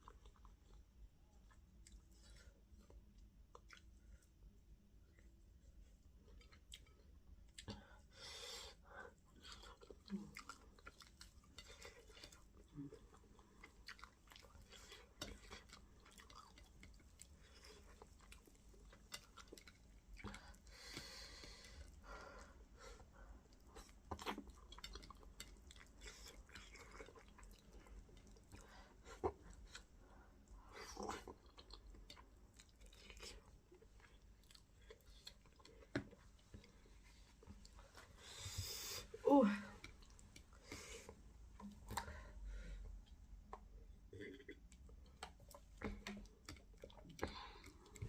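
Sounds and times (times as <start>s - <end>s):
wet chewing and lip smacking: 1.4s - 4.3s, 9.2s - 22.0s, 23.4s - 39.2s, 42.8s - 48.0s.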